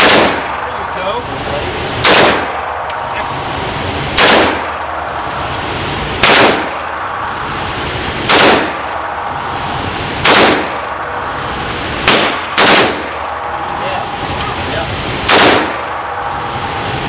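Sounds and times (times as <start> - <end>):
automatic gunfire bursts: 0.0 - 0.4, 2.0 - 2.5, 4.2 - 4.6, 6.2 - 6.7, 8.3 - 8.8, 10.2 - 10.8, 12.0 - 13.1, 15.3 - 15.8
steady background noise: 0.0 - 17.0.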